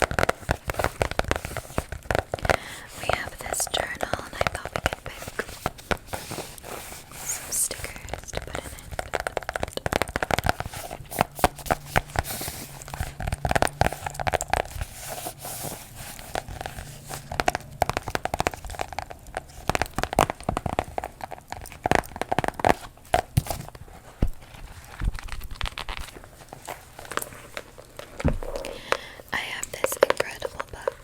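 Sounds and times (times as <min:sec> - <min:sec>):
paper crinkling: 0:00.0 - 0:31.0
hands tapping on a journal: 0:07.7 - 0:23.6.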